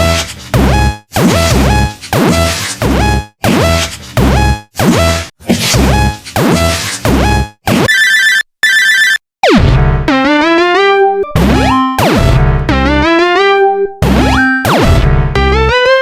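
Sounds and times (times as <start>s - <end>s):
low buzzy bass: 0.0s - 7.6s, 9.5s - 10.4s, 11.3s - 13.2s, 14.0s - 15.8s
electronic synthesizer music: 9.4s - 16.0s.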